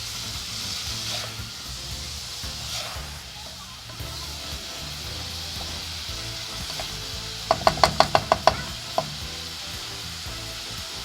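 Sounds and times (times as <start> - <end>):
food sizzling in a pot: 0.0 - 11.0
spoon clinking against pot: 6.7 - 9.2.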